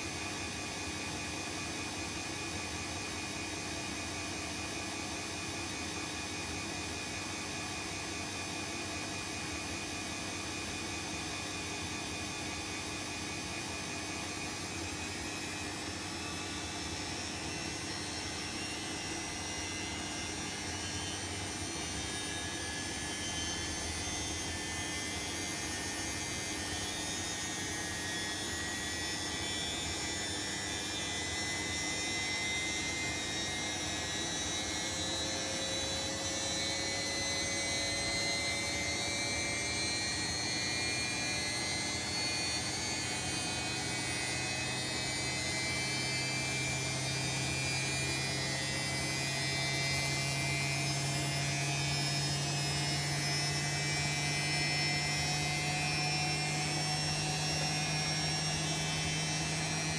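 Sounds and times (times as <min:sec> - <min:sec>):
washing machine spinning: 0:12.3 - 0:59.9.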